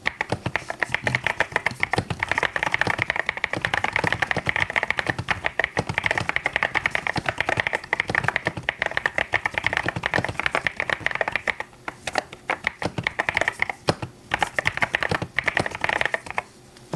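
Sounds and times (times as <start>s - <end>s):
fast typing on mechanical keyboard: 0.0s - 16.5s.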